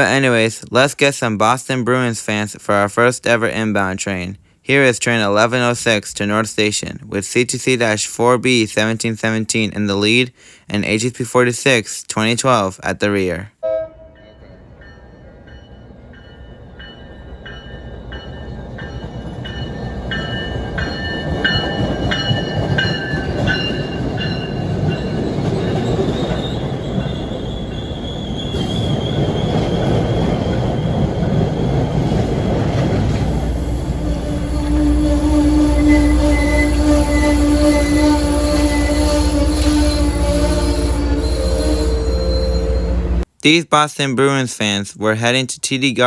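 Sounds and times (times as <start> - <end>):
train bell ringing: 13.6 - 28.1, 35.7 - 43.2
train rumbling on rails: 13.6 - 43.3
high wheel squeal: 24.2 - 32.1, 33.4 - 43.3.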